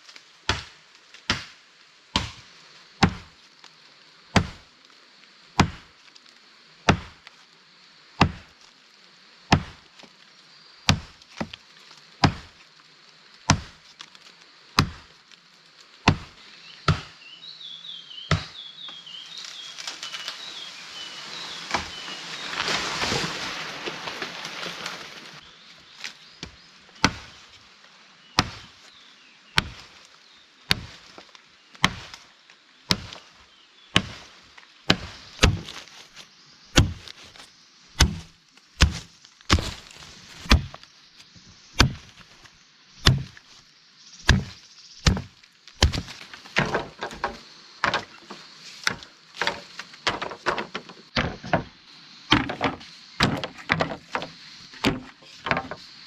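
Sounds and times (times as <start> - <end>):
blade chopping into wood: 1.3 - 1.6, 5.6 - 5.9, 6.9 - 7.2, 8.2 - 8.5, 9.5 - 9.8, 13.5 - 13.8, 34.9 - 35.8, 36.8 - 37.4, 38.0 - 40.8, 41.8 - 42.3, 43.0 - 43.4, 44.2 - 48.1.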